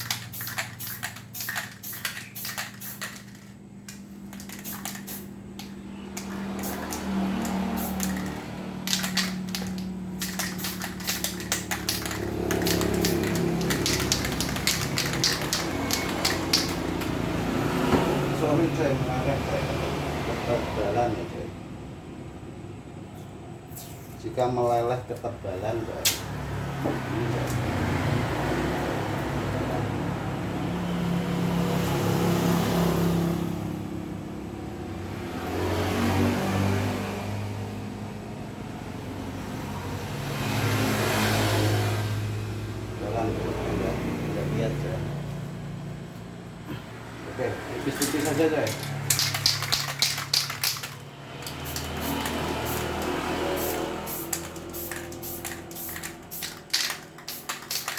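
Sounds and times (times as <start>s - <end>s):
spray can ball rattling: 0.0s - 17.3s, 47.9s - 57.9s
vehicle engine running: 0.0s - 18.7s, 47.4s - 57.9s.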